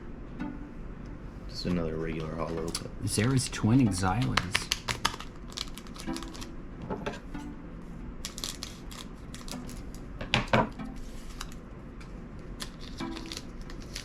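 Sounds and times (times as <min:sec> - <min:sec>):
trading cards clicking and snapping: 0:04.1 - 0:06.5, 0:12.6 - 0:14.0.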